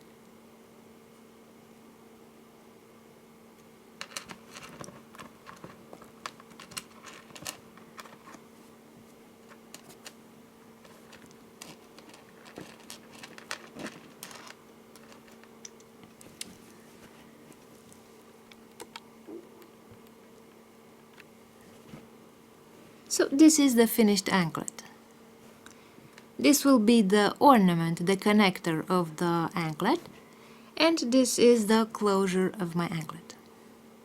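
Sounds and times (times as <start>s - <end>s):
faint steady hum: 0.0s - 34.0s
small metal pieces clicking: 11.1s - 15.8s.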